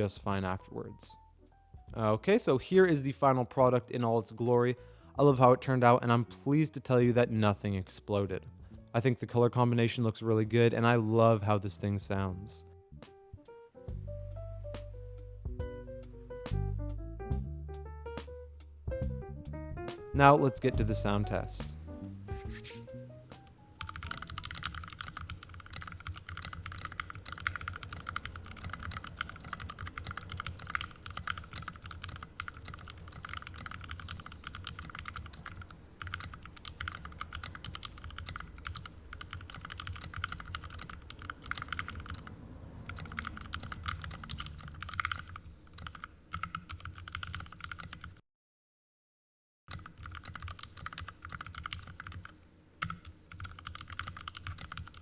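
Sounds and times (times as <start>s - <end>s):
typing on mechanical keyboard: 23.8s - 48.2s, 49.7s - 55.0s.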